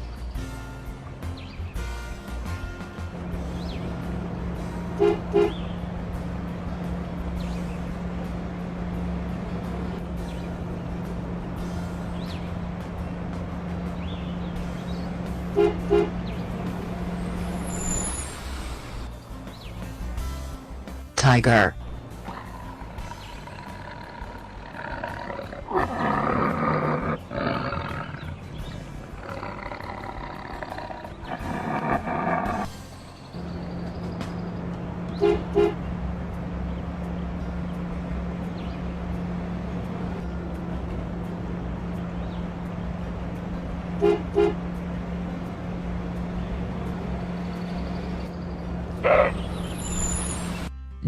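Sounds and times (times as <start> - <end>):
engine hum: 0.0 - 51.0
light background music: 0.0 - 51.0
vehicle horn tooting: 5.0 - 5.6, 15.5 - 16.2, 35.2 - 35.8, 44.0 - 44.8
tiger roaring: 22.1 - 32.7, 49.0 - 49.5.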